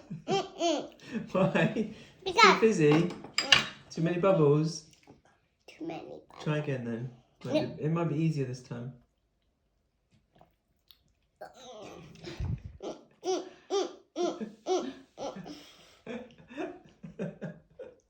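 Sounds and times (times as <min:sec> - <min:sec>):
young child laughing: 0:00.0 - 0:01.7, 0:11.8 - 0:15.8.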